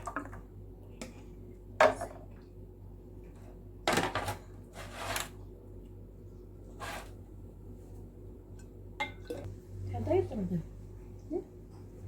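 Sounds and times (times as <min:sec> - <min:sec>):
kitchenware scraping and rustling: 0:03.4 - 0:05.4, 0:06.7 - 0:07.2.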